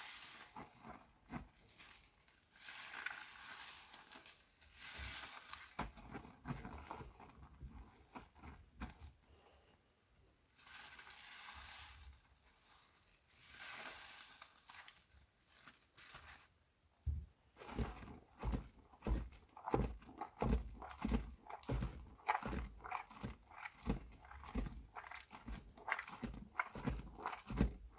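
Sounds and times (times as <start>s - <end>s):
soft crunching presses: 17.5s - 27.9s.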